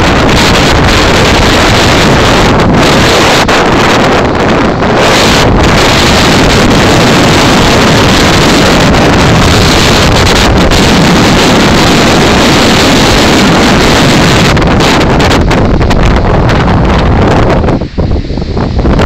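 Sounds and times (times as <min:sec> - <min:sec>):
strong wind buffeting microphone: 0:00.0 - 0:19.0.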